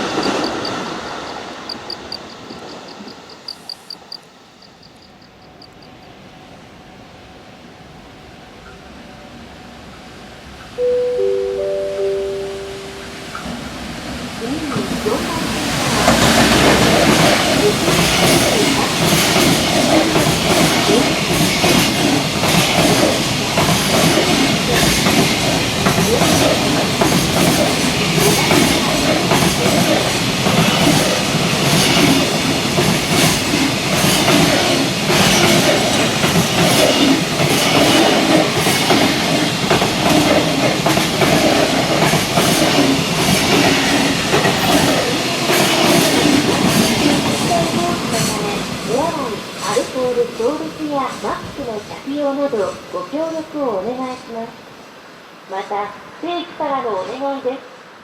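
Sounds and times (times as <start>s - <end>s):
freight train passing: 0.0s - 58.0s
wheels clacking over rail joints: 13.4s - 51.6s.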